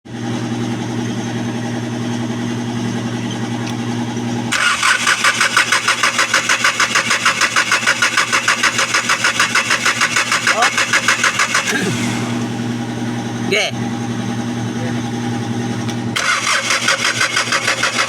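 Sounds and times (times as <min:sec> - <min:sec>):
starter motor cranking diesel engine: 0:04.5 - 0:13.6, 0:14.8 - 0:18.0
steady hum: 0:10.5 - 0:16.1.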